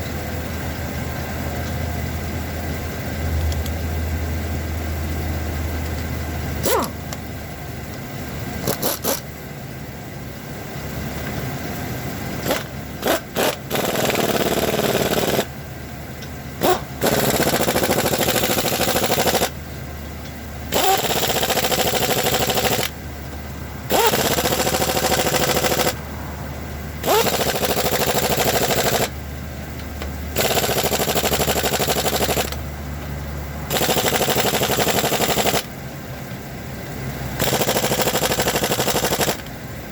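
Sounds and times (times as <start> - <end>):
impact wrench whining and hammering: 6.6 - 7.3, 8.6 - 9.4, 12.4 - 15.6, 16.2 - 19.6, 20.2 - 26.1, 27.0 - 29.2, 29.8 - 32.6, 33.7 - 36.4, 37.3 - 39.6.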